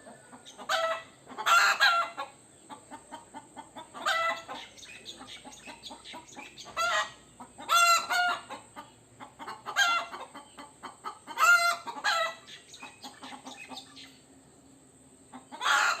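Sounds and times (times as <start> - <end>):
rooster clucking: 0.0 - 14.1, 15.3 - 16.0
rooster harsh alarm calls: 0.5 - 2.3, 3.7 - 4.7, 5.4 - 13.8, 15.3 - 16.0.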